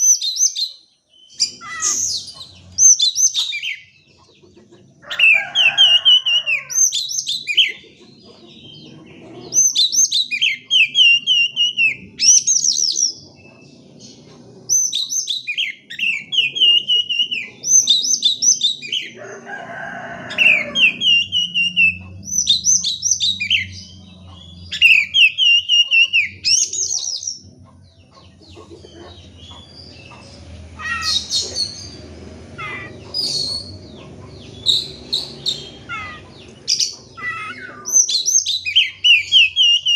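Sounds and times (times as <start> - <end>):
harsh rasping bird call: 1.4 - 3.8, 18.8 - 23.8, 24.4 - 27.1, 29.5 - 33.9, 34.5 - 39.9
songbird singing chirps and whistles: 14.7 - 19.2.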